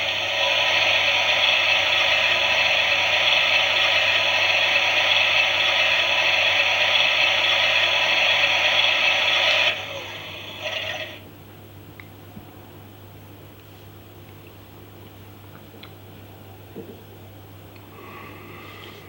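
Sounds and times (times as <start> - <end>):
toy washing machine motor whirring: 0.0 - 11.2.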